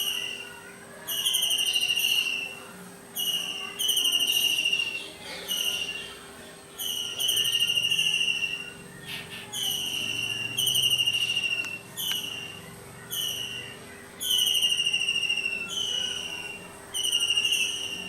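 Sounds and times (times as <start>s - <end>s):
kingfisher calling: 6.8s - 18.0s.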